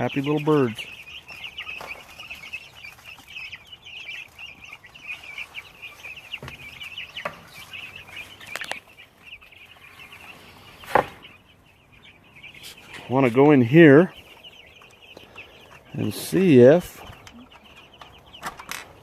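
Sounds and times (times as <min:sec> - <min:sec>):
chicks peeping: 0:00.0 - 0:19.0
sharp knocks: 0:10.9 - 0:11.2.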